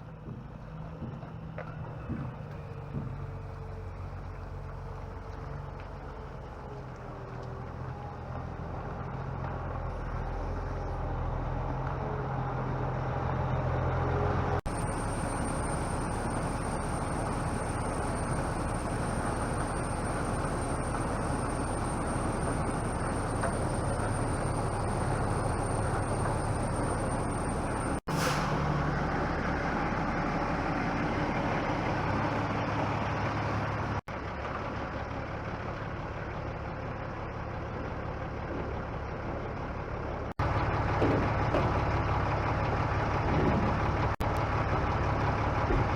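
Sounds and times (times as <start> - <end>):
heavy machinery engine running: 0.0 - 45.9
high-pitched whine: 14.7 - 28.0.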